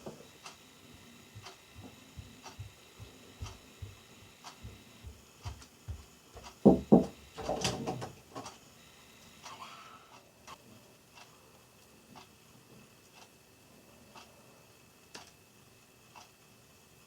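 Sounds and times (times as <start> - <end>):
loud knocks: 6.6 - 8.1.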